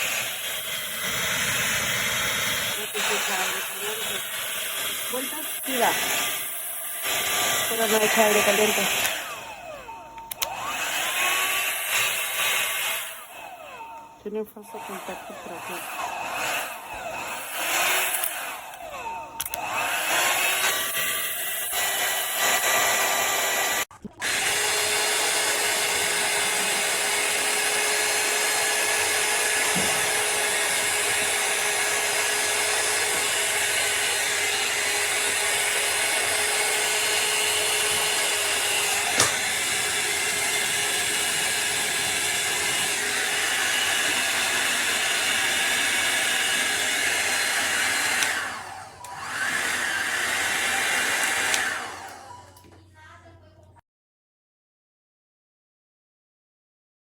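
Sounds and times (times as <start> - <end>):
hot air styler blowing: 0.0 - 52.6
click: 10.2 - 10.5, 19.4 - 19.6, 51.5 - 52.8.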